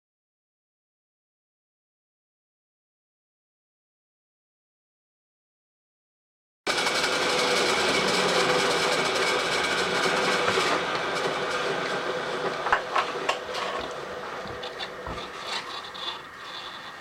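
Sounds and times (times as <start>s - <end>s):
power saw cutting metal: 6.7s - 17.0s.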